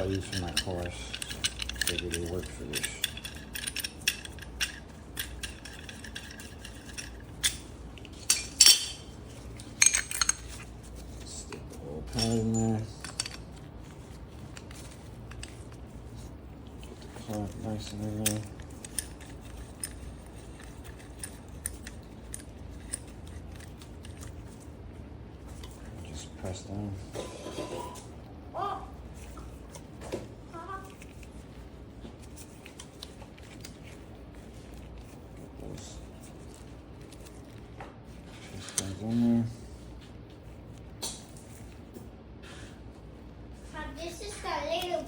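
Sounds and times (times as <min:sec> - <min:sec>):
metal parts clinking: 0:00.0 - 0:11.1, 0:12.0 - 0:16.3, 0:17.0 - 0:24.6.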